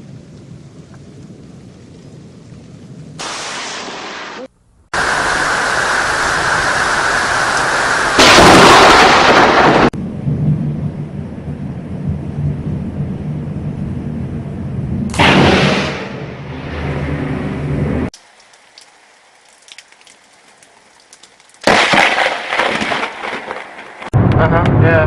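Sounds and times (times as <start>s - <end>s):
thunder rumble: 0.0s - 18.1s, 21.6s - 25.0s
rain and wind roar: 0.0s - 25.0s.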